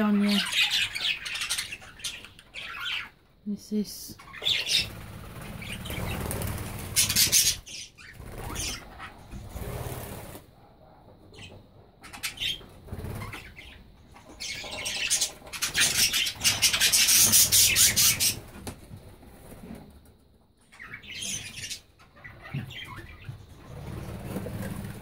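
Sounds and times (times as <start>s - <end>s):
birds chirping: 0.0s - 18.6s, 20.6s - 25.0s
birds flapping wings: 4.7s - 7.6s, 23.7s - 25.0s.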